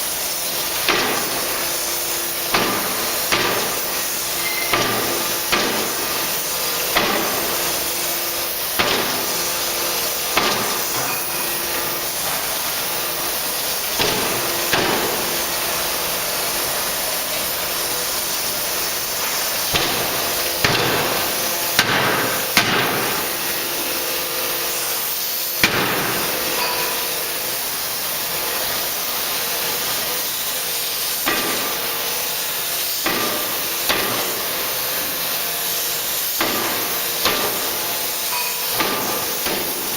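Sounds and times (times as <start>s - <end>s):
machinery hiss: 0.0s - 39.9s
forging hammer strikes: 0.8s - 1.4s, 2.5s - 6.2s, 6.9s - 7.5s, 8.7s - 9.4s, 10.3s - 11.5s, 13.9s - 15.3s, 19.7s - 23.7s, 25.6s - 27.3s, 36.4s - 39.9s.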